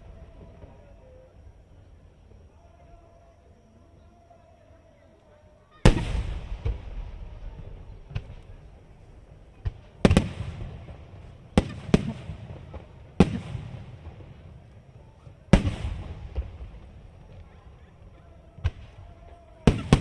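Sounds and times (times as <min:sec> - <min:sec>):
firework shells bursting: 0:05.8 - 0:20.0.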